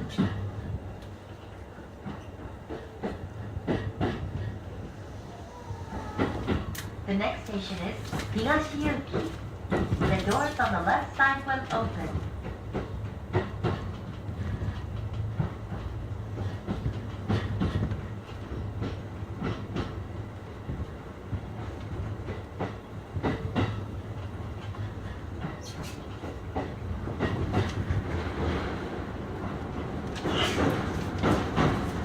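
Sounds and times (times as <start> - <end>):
train interior hum: 0.0 - 32.0
wheels clicking over rail joints: 5.6 - 20.0, 21.6 - 32.0.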